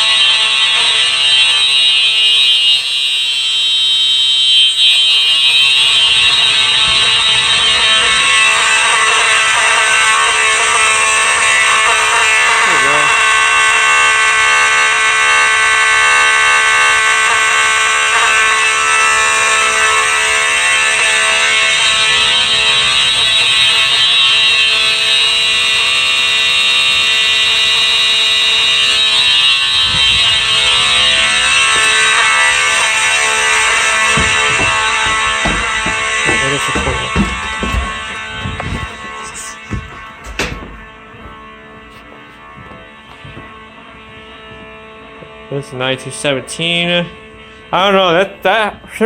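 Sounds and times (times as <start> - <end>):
fire alarm horns blaring: 0.0 - 49.0
knocks: 28.9 - 41.4.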